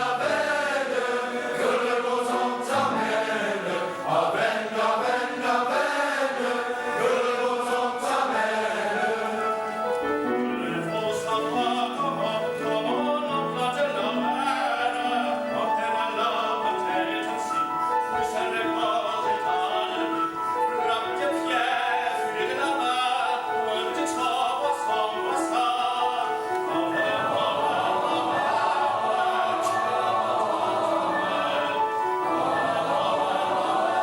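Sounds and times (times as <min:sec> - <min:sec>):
men's chorus singing: 0:00.0 - 0:34.0.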